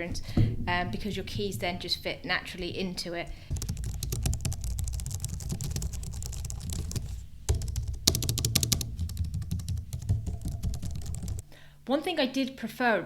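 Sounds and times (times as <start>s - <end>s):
keyboard keys clicking: 3.5s - 11.4s.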